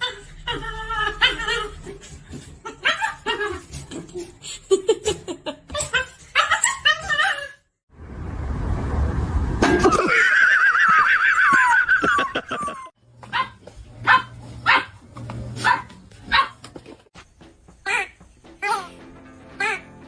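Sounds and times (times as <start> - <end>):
dog barking: 13.3 - 15.0, 15.6 - 16.6.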